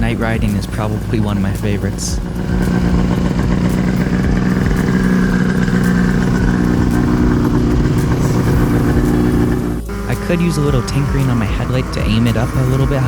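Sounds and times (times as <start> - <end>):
snowmobile engine running: 0.0 - 13.0.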